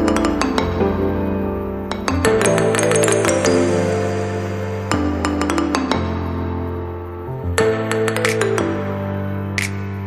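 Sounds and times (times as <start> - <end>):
sustained instrumental notes: 0.0 - 6.4.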